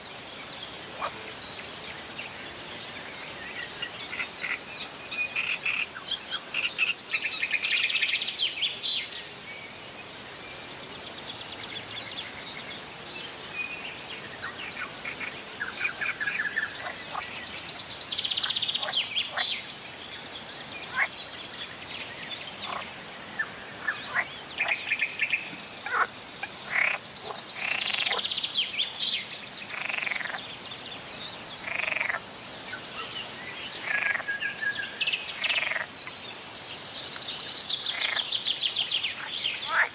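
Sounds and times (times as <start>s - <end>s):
songbirds singing: 0.0s - 39.9s
frogs croaking: 4.0s - 4.6s, 14.4s - 17.4s, 18.4s - 19.7s, 20.8s - 21.2s, 22.6s - 28.4s, 29.7s - 30.6s, 31.6s - 33.1s, 33.7s - 36.1s, 37.8s - 38.4s, 39.2s - 39.9s.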